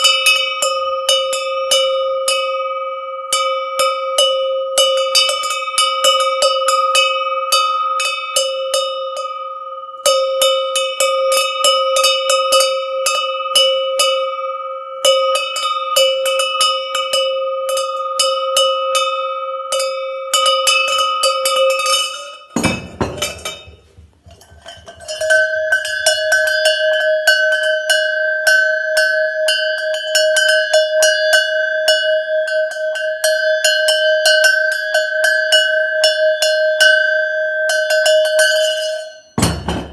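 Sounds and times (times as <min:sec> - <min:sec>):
higher-pitched animal bell clanking: 0:15.0 - 0:37.1, 0:37.7 - 0:39.9
livestock bell clanking: 0:19.7 - 0:31.3, 0:37.7 - 0:39.9
handling knock: 0:22.6 - 0:24.9, 0:39.4 - 0:39.9.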